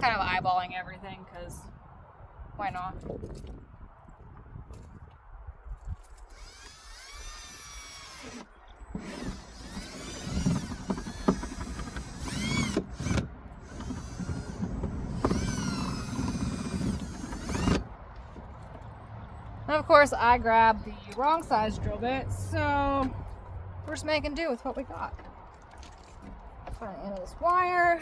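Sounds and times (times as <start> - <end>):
power drill motor whine: 6.1 - 17.9.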